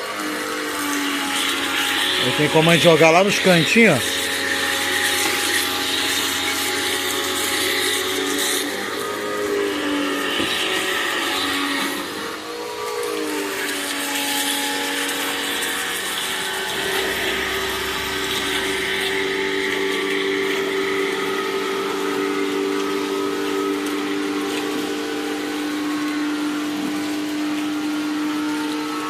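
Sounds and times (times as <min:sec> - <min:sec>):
pressure washer motor and pump hum: 0:00.0 - 0:29.0.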